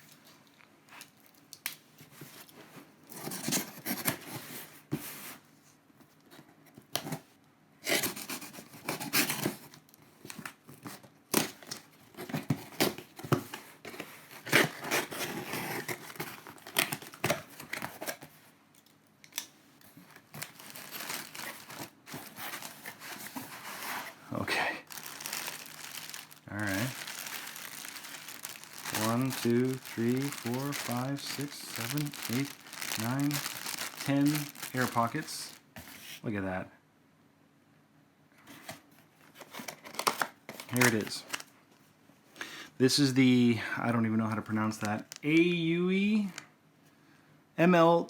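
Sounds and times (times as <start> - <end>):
air pillow packing crinkling: 20.0 - 36.0, 39.9 - 41.5
paper or plastic tearing: 20.1 - 24.2, 24.8 - 36.0.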